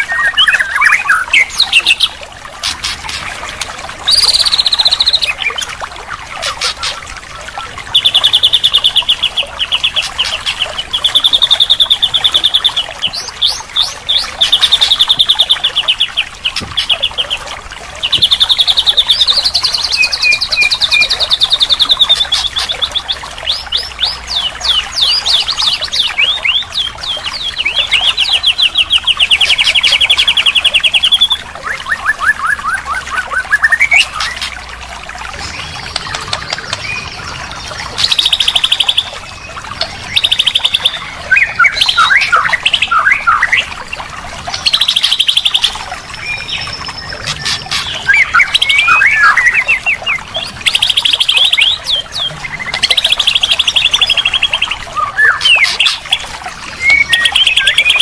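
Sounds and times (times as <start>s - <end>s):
bird singing fast trills: 4.1s - 5.6s, 35.4s - 43.7s, 44.5s - 56.2s, 56.8s - 58.0s.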